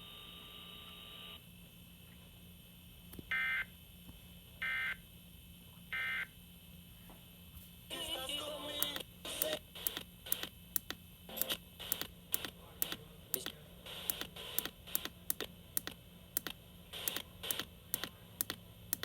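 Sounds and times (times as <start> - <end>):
sharp clicks and taps: 8.8 - 19.0.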